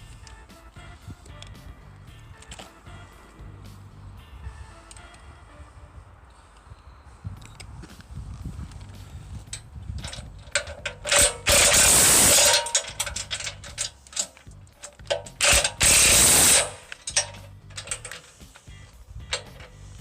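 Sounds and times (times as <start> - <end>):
ratchet wrench clicking: 9.5 - 20.0.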